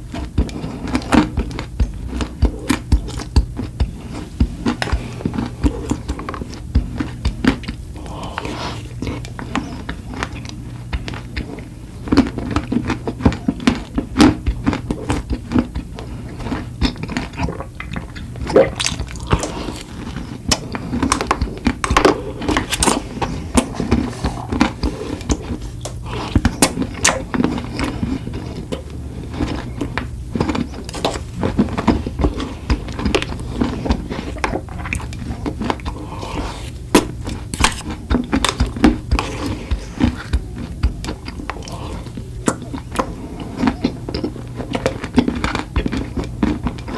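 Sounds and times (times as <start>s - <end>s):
soft crunches of sweets: 0.0s - 46.9s
wet chewing: 0.0s - 46.9s
lip smacks: 0.4s - 46.9s.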